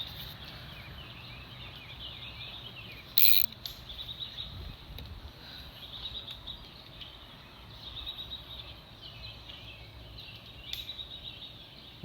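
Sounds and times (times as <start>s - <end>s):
small birds chirping: 0.7s - 4.7s.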